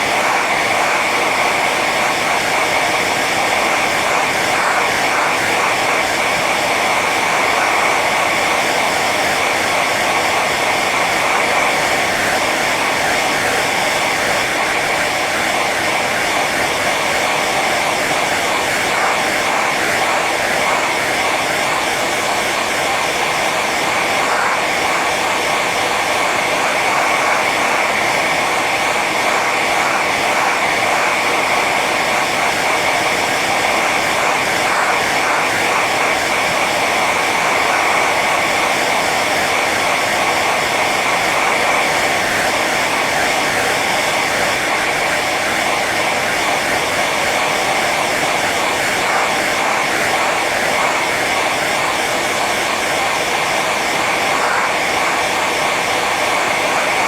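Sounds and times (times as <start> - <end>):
hair dryer running: 0.0 - 57.0.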